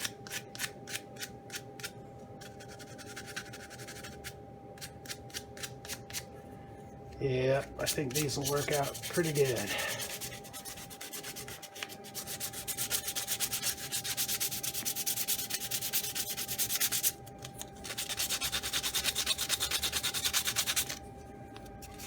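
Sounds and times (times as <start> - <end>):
sandpaper rubbing on wood: 7.8 - 17.2, 17.8 - 21.0.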